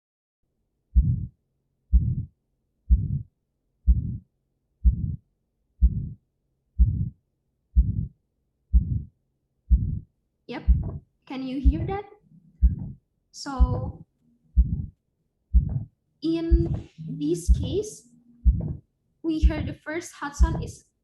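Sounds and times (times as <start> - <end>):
heart murmur: 1.0 - 2.3, 2.9 - 3.3, 3.9 - 5.2, 5.8 - 6.2, 6.8 - 7.2, 7.8 - 9.1, 9.7 - 12.0, 12.6 - 14.0, 14.6 - 19.8, 20.4 - 20.8
heartbeat: 1.0 - 6.2, 6.8 - 7.2, 7.8 - 19.8, 20.4 - 20.8.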